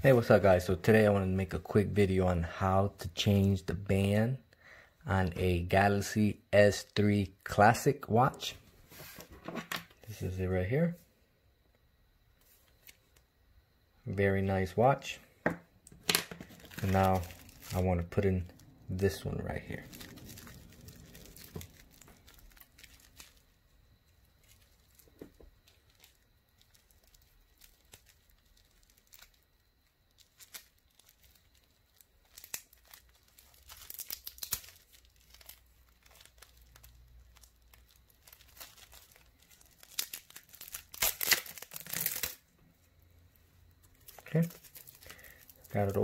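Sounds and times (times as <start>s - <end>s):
packaging tearing: 16.4s - 18.6s, 19.6s - 23.5s, 25.6s - 29.5s, 30.1s - 42.4s, 44.0s - 46.0s.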